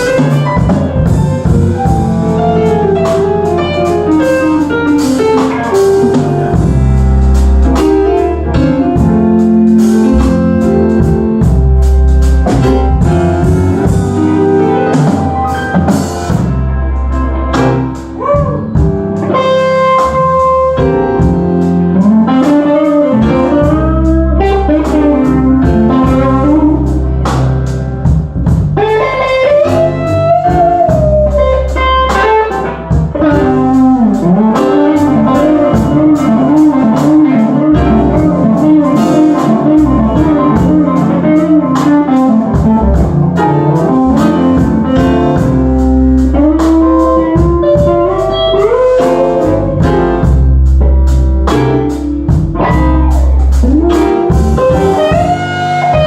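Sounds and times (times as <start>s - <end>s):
blues-rock band playing: 0.0s - 56.0s
guitar lead with bending notes: 0.0s - 56.0s.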